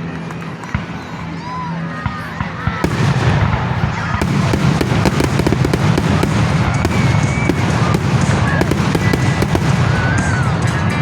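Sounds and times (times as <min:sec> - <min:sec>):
fireworks crackling pops: 0:02.1 - 0:11.0
firework whistles: 0:02.8 - 0:10.8.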